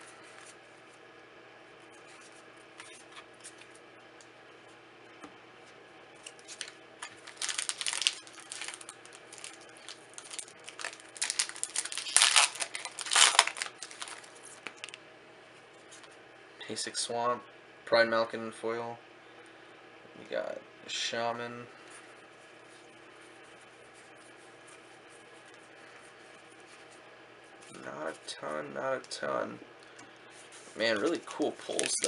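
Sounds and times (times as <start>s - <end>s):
foil wrapper crinkling and tearing: 6.2s - 15.0s, 31.0s - 32.0s.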